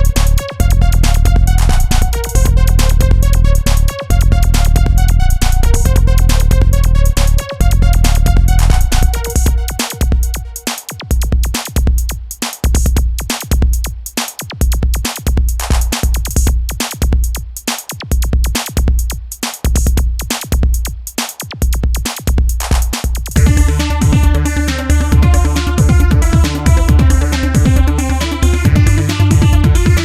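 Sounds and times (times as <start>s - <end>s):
drum machine beat: 0.0s - 30.0s
fast hi-hat ticks: 0.0s - 30.0s
synth melody line: 1.7s - 10.6s, 23.4s - 30.0s.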